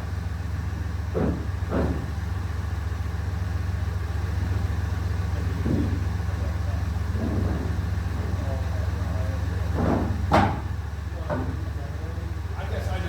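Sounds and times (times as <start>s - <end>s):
engine idling hum: 0.0s - 13.0s
short thuds: 0.6s - 2.6s, 5.1s - 6.4s, 7.0s - 11.7s.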